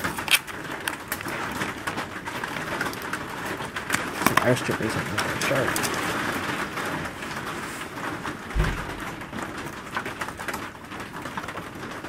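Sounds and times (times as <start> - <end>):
steady rain hiss: 1.3 - 11.8
dull thump: 8.5 - 9.4.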